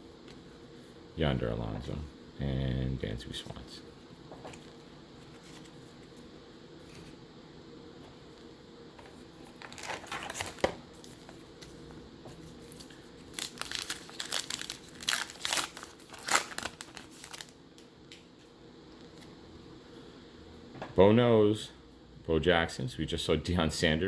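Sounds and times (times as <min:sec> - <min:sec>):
wrapper crinkling and tearing: 0:09.5 - 0:11.3, 0:12.6 - 0:17.9.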